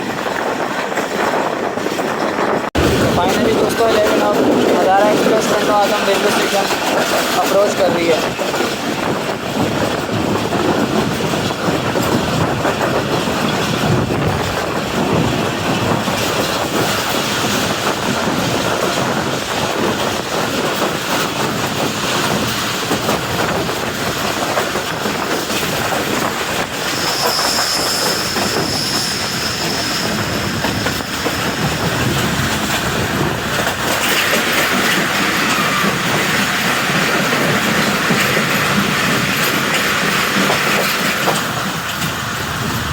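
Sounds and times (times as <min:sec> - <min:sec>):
train wheels clattering on rails: 0:00.0 - 0:42.9
high wheel squeal: 0:26.7 - 0:32.4, 0:35.0 - 0:36.6.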